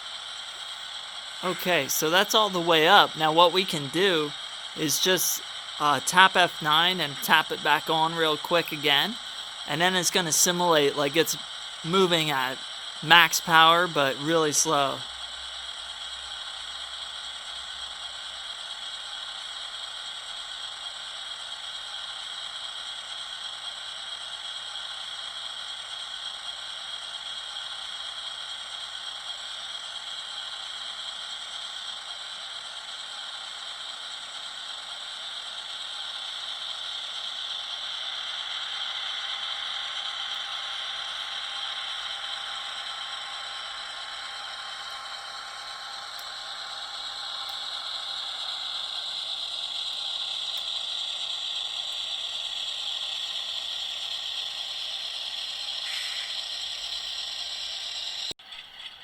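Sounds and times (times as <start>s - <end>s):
tinny rattling engine drone: 0.0s - 15.0s.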